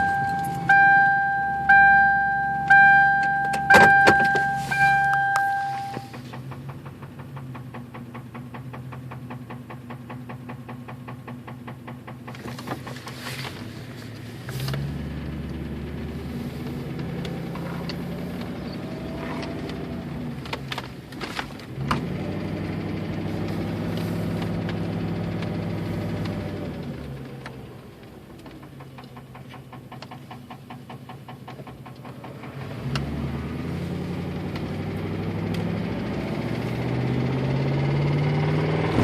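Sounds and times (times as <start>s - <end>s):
engine running with tapping: 0.0s - 39.0s
engine revving: 14.4s - 20.9s, 21.7s - 27.5s, 32.2s - 39.0s.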